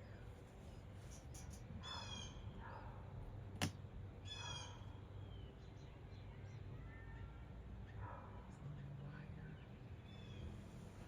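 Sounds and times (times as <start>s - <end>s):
bird harsh calls: 1.8s - 2.4s, 4.2s - 4.9s.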